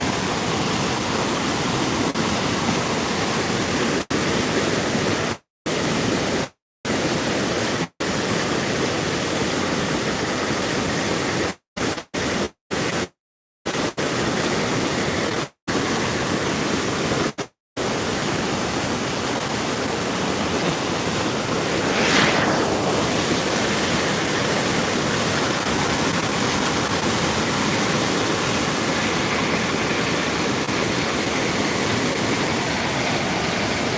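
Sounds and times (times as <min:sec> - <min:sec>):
floodwater rushing: 0:20.2 - 0:33.9.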